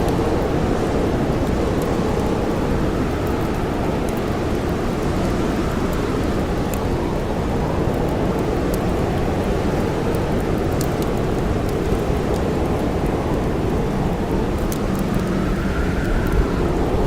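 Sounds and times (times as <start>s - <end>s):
campfire crackling: 0.0s - 17.0s
wind blowing: 11.4s - 17.0s.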